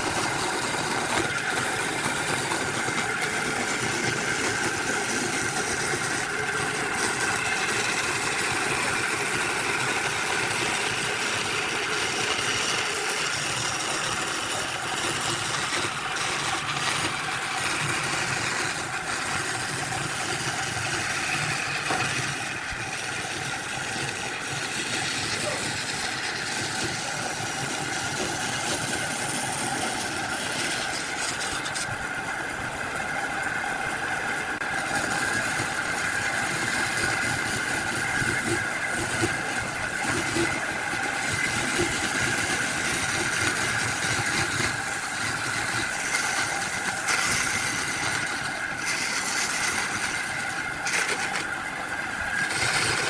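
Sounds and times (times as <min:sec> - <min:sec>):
motor-driven machine humming: 0:00.0 - 0:53.0.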